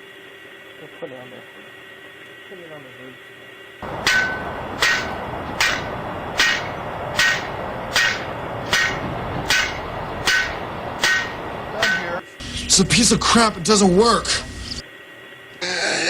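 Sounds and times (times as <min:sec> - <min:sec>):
hammer blows with metallic ring: 0:03.8 - 0:14.8
steady hiss: 0:03.8 - 0:14.8.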